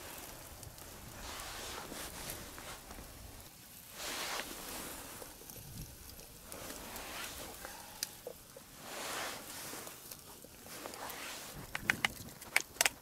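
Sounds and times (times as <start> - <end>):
rustling and handling noise: 0.0 - 13.0
sharp clicks and taps: 11.7 - 13.0.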